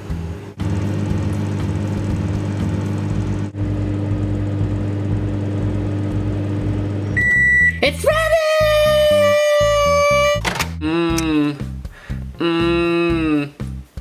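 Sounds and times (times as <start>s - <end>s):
microwave oven humming: 0.0s - 8.2s.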